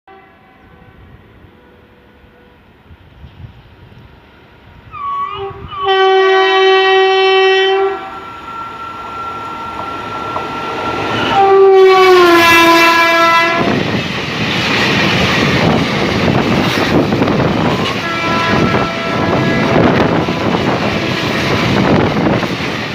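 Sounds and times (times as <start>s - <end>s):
locomotive air horn blasts: 0.1s - 2.6s, 4.9s - 13.8s, 17.8s - 21.3s.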